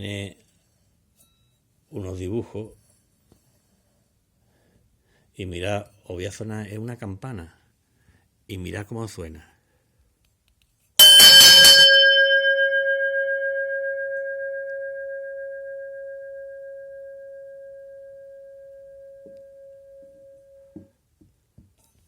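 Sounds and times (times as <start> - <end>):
bell ringing: 11.0 - 20.7.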